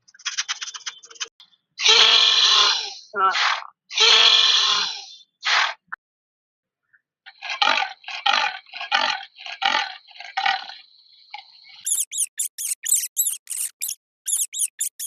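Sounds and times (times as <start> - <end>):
harsh animal calls: 11.8 - 15.0
high-pitched squeaks: 11.8 - 15.0.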